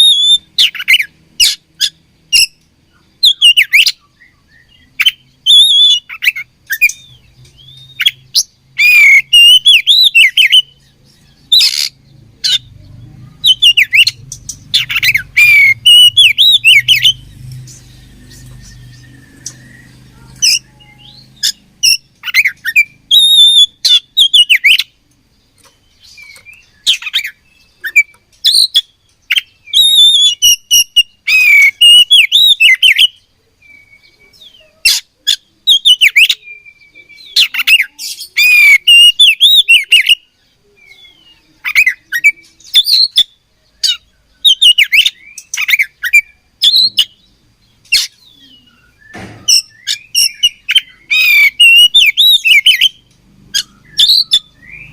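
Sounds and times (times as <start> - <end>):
bird whistling and chattering: 0.0 - 2.6, 3.2 - 10.8, 11.4 - 25.0, 26.0 - 33.2, 33.9 - 40.3, 40.9 - 47.3, 47.9 - 54.9.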